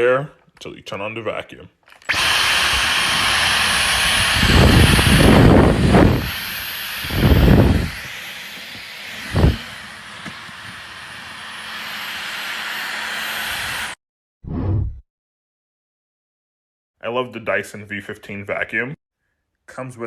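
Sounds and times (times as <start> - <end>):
vacuum cleaner hissing: 2.1 - 14.0
low rumbling thumps: 4.2 - 6.4, 7.1 - 8.0.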